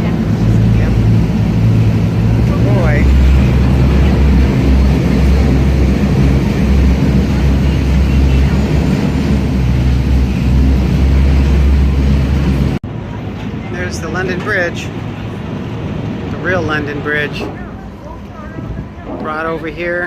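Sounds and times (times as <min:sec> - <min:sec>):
boat engine low rumble: 0:00.0 - 0:20.0.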